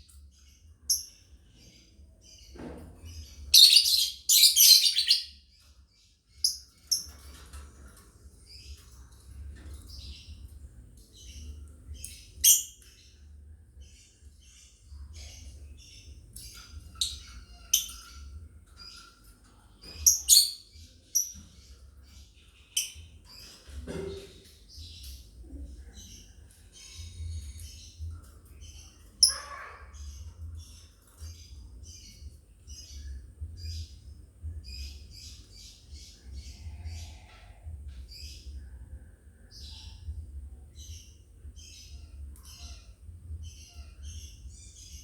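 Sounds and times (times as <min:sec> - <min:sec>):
lovebirds chattering: 0:13.9 - 0:34.0, 0:40.8 - 0:45.0.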